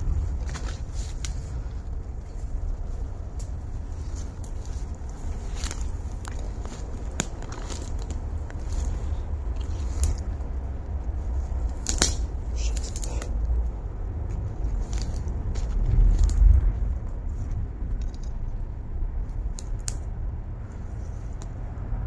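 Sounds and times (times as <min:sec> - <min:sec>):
footsteps through brush: 0:00.0 - 0:13.4, 0:14.2 - 0:18.0
twigs crackling and snapping: 0:00.0 - 0:21.6
steady low rumble: 0:00.0 - 0:22.0.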